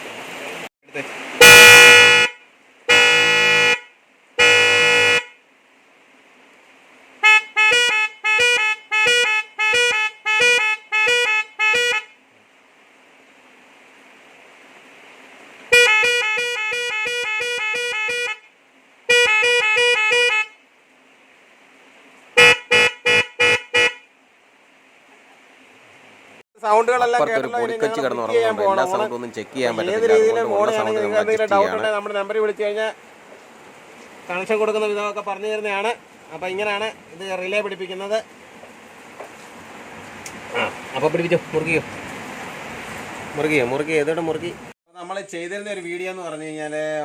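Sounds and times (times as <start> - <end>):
auto rickshaw horn blasts and toots: 1.4 - 5.4, 7.2 - 12.2, 15.7 - 18.5, 19.1 - 20.6, 22.4 - 24.1.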